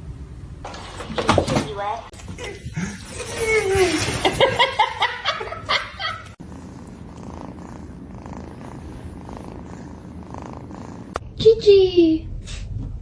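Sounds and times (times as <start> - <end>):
cat purring: 6.3 - 11.4.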